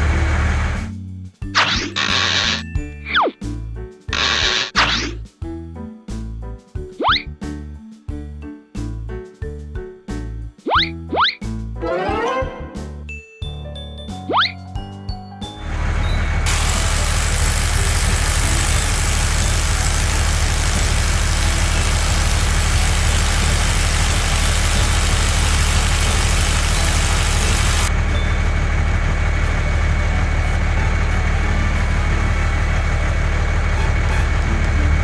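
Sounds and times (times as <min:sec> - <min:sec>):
vehicle engine low hum: 0:00.0 - 0:00.9, 0:15.6 - 0:35.0
hiss: 0:16.5 - 0:27.9.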